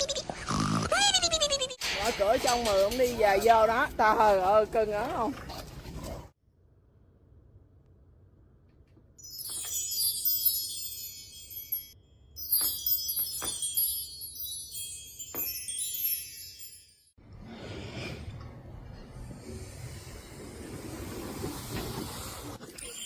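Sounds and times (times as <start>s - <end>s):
high tinkling chimes: 9.2s - 17.2s, 22.8s - 23.0s.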